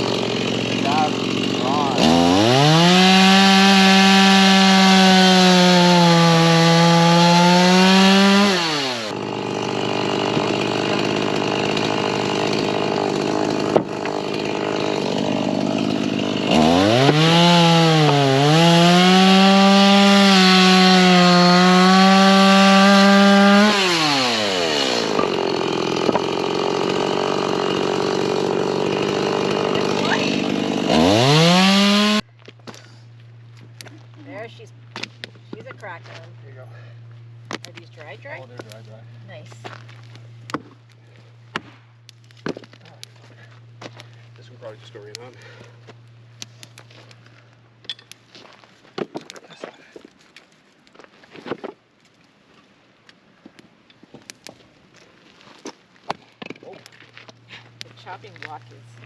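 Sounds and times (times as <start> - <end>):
chainsaw idling: 0.0 - 32.3, 42.8 - 47.2
chainsaw cutting wood: 0.0 - 32.8, 39.5 - 47.4.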